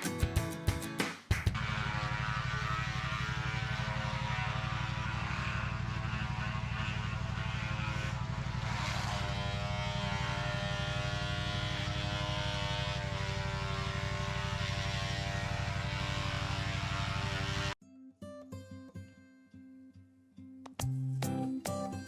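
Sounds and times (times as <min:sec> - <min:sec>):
whining tone shifting in pitch: 0:01.5 - 0:17.8
engine running with even pulse: 0:01.6 - 0:17.8.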